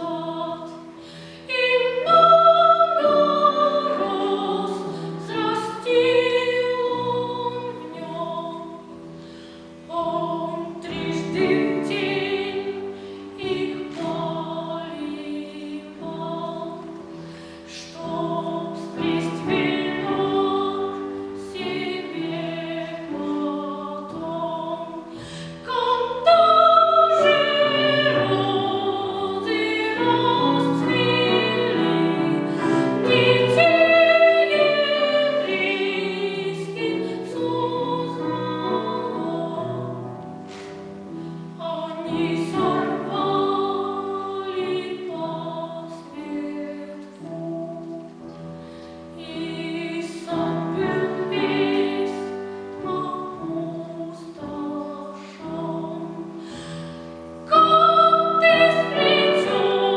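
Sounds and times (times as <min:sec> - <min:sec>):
person singing opera-style: 0:00.0 - 0:08.9, 0:17.7 - 0:40.0, 0:57.5 - 0:59.9
musical accompaniment: 0:00.0 - 0:59.9.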